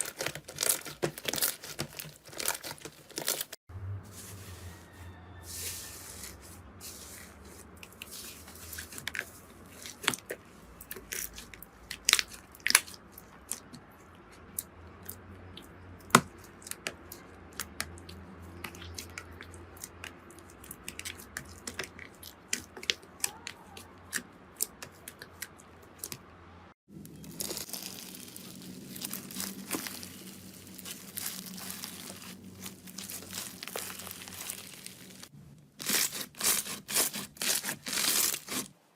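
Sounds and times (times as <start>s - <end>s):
slime crackling and popping: 0.0s - 3.6s, 27.0s - 38.7s
soft rustle: 4.0s - 9.8s.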